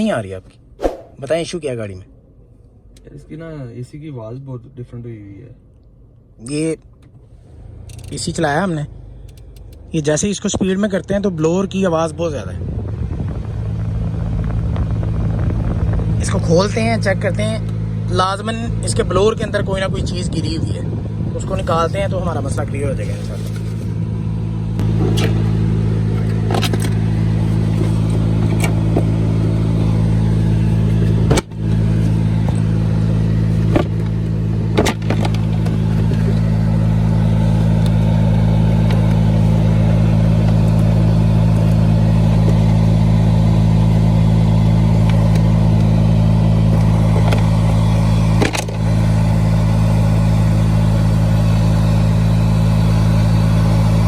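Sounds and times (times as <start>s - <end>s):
blower fan humming: 12.5s - 54.0s.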